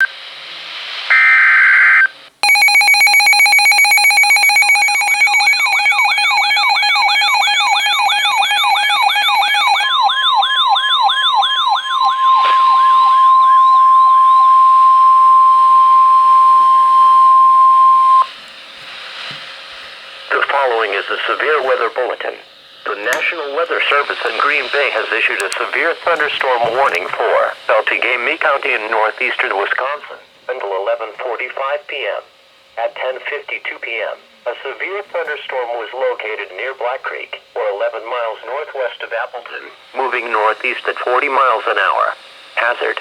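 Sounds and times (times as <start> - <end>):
pulsing alarm tone: 2.4 - 18.3
steady high attention tone: 2.4 - 18.3
warbling siren: 2.4 - 18.3.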